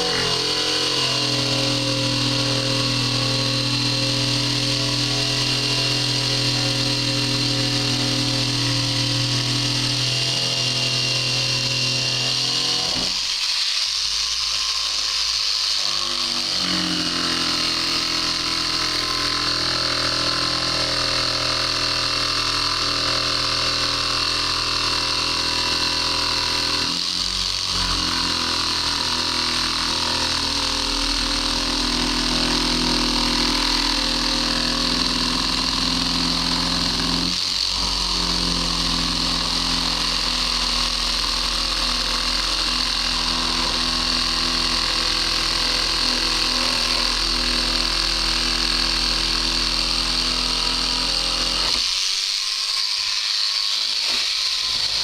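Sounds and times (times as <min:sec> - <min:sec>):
motor humming: 0:00.0 - 0:13.2.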